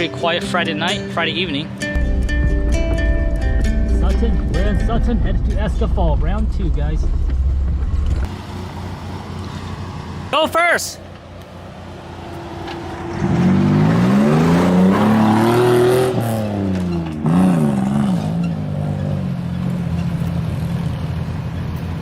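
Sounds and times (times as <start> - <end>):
vehicle engine revving: 12.4 - 21.9.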